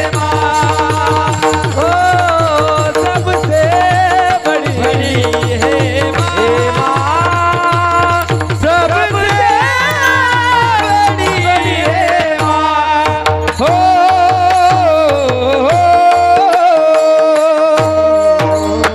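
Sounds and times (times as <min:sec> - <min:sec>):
person singing devotional song: 0:00.0 - 0:18.9
tabla beat: 0:00.0 - 0:18.9
sustained instrumental tones: 0:09.2 - 0:11.8.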